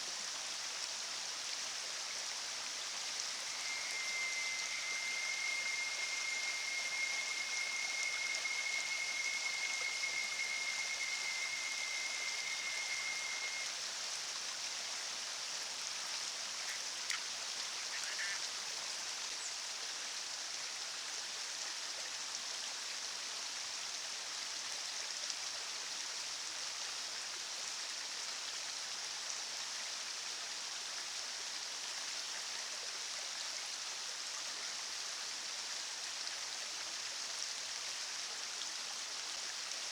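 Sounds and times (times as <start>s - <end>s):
river rushing: 3.1s - 13.7s
high steady tone: 3.3s - 13.7s
faint ticks: 16.6s - 17.3s.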